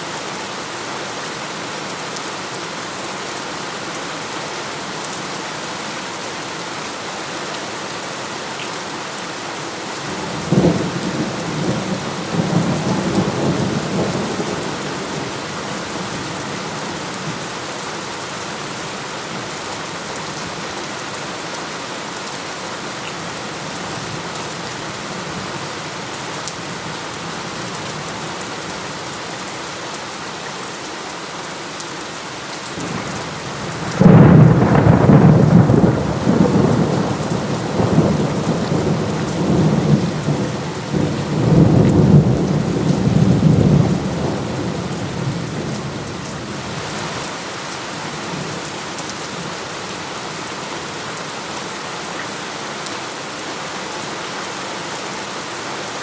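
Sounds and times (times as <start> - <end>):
heavy rain: 0.0 - 56.0
rumbling thunderclap: 32.9 - 46.0.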